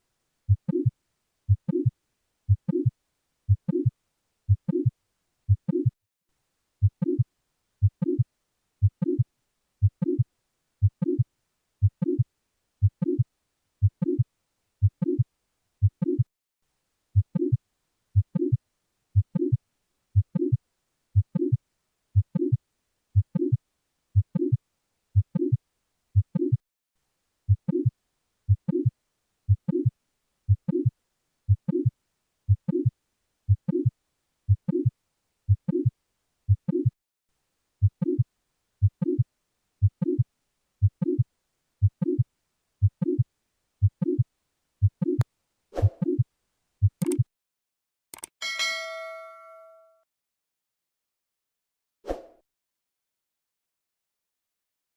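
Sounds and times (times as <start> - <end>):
heart murmur: 0.5 - 0.9, 1.5 - 1.9, 2.5 - 2.9, 3.5 - 3.9, 4.5 - 4.9, 5.5 - 6.0, 6.8 - 7.2, 7.8 - 8.2, 8.8 - 9.2, 9.8 - 10.2, 10.8 - 11.2, 11.8 - 12.2, 12.8 - 13.2, 13.8 - 14.2, 14.8 - 15.2, 15.8 - 16.3, 27.5 - 27.9, 28.5 - 28.9, 29.5 - 29.9, 30.5 - 30.9, 31.5 - 31.9, 32.5 - 32.9, 33.5 - 33.9, 34.5 - 34.9, 35.5 - 35.9, 36.5 - 37.0, 37.8 - 38.2, 38.8 - 39.2, 39.8 - 40.2, 40.8 - 41.2, 41.8 - 42.2, 42.8 - 43.2, 43.8 - 44.2, 44.8 - 45.2, 45.8 - 46.2, 46.8 - 47.2
heartbeat: 0.5 - 0.9, 1.5 - 1.9, 2.5 - 2.9, 3.5 - 3.9, 4.5 - 4.9, 5.5 - 6.0, 6.8 - 7.2, 7.8 - 8.2, 8.8 - 9.2, 9.8 - 10.2, 10.8 - 11.2, 11.8 - 12.2, 12.8 - 13.2, 13.8 - 14.2, 14.8 - 15.2, 15.8 - 16.3, 17.2 - 17.6, 18.2 - 18.6, 19.2 - 19.6, 20.2 - 20.6, 21.2 - 21.6, 22.2 - 22.6, 23.2 - 23.6, 24.2 - 24.6, 25.2 - 25.6, 26.2 - 26.6, 27.5 - 27.9, 28.5 - 28.9, 29.5 - 29.9, 30.5 - 30.9, 31.5 - 31.9, 32.5 - 32.9, 33.5 - 33.9, 34.5 - 34.9, 35.5 - 35.9, 36.5 - 37.0, 37.8 - 38.2, 38.8 - 39.2, 39.8 - 40.2, 40.8 - 41.2, 41.8 - 43.2, 43.8 - 44.2, 44.8 - 45.2, 45.8 - 46.2, 46.8 - 47.3.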